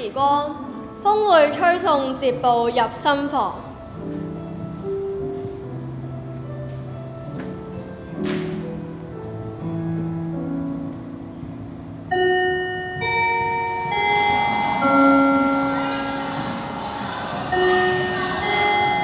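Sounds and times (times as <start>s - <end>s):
soft low held notes: 3.4s - 19.0s
bright bell-like notes: 12.1s - 19.0s.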